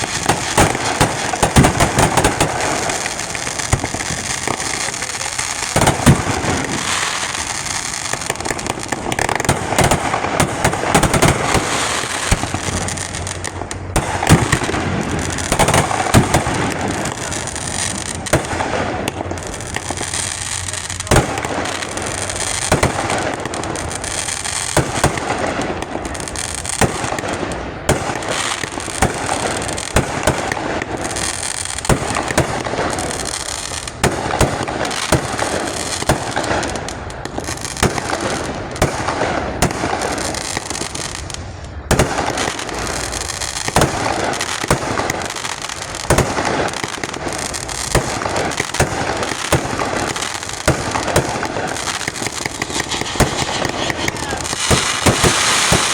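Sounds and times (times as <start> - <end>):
firework shells bursting: 0.0 - 26.1, 41.9 - 55.9
fireworks crackling: 0.0 - 55.9.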